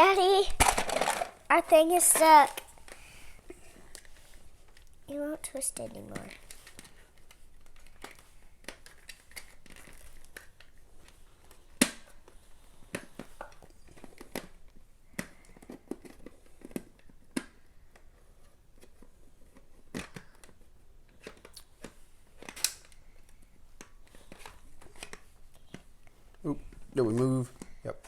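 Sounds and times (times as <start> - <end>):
sharp plastic clack: 0.5 - 1.4.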